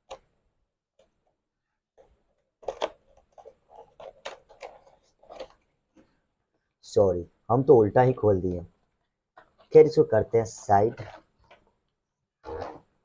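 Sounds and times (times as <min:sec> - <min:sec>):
packaging rustling: 0:02.0 - 0:06.2.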